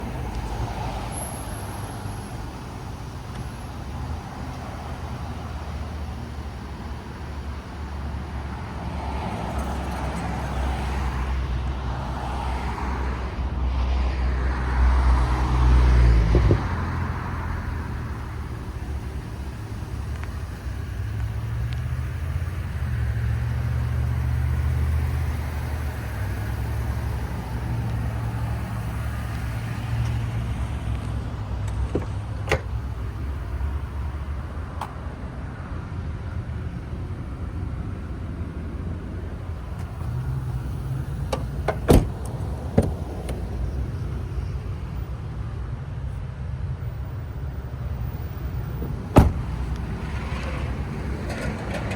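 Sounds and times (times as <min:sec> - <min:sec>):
pickup engine rumbling: 0:14.6 - 0:51.9.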